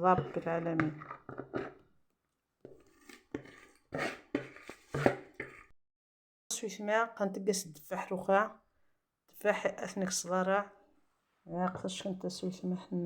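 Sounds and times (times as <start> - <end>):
kitchen utensils and dishes knocking: 0.0 - 1.7.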